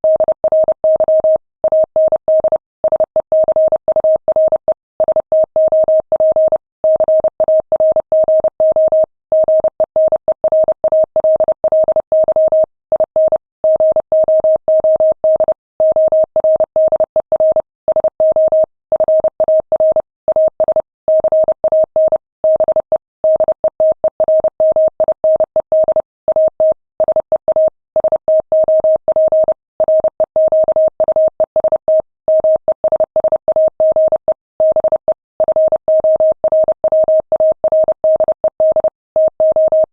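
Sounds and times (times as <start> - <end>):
morse code beeps: 0.0 - 39.9.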